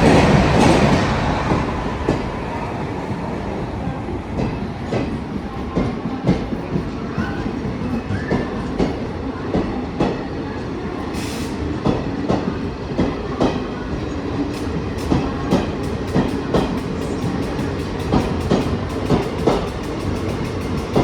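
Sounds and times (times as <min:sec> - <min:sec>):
train coaches rumbling past: 0:00.0 - 0:21.0
wheels clacking over rail joints: 0:14.5 - 0:21.0.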